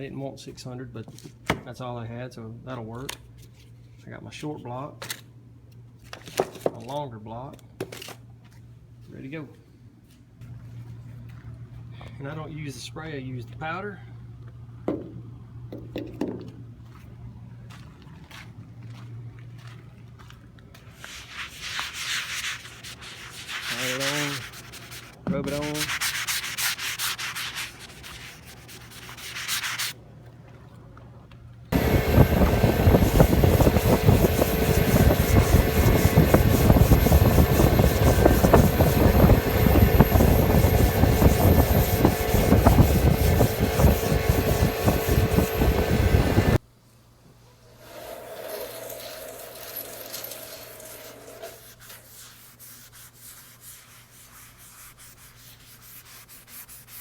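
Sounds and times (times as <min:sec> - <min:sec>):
sandpaper rasping on primer: 0:21.0 - 0:30.0, 0:31.8 - 0:46.5, 0:48.5 - 0:57.0.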